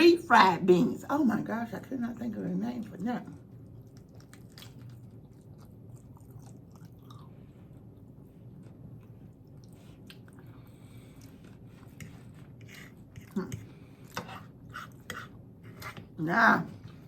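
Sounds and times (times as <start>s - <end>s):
person chewing crispy food: 3.7s - 13.4s.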